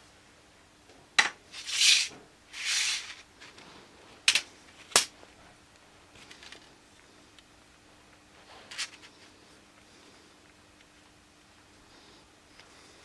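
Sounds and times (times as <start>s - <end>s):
scraping strokes: 1.6s - 3.2s.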